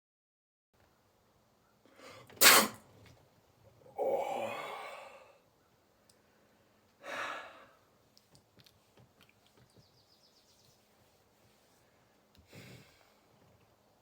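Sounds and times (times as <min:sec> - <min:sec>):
person sneezing: 0:02.4 - 0:02.8
voiced sigh: 0:03.9 - 0:05.4, 0:07.0 - 0:07.8
breathy exhale: 0:04.0 - 0:05.4, 0:07.0 - 0:07.8, 0:12.5 - 0:13.2.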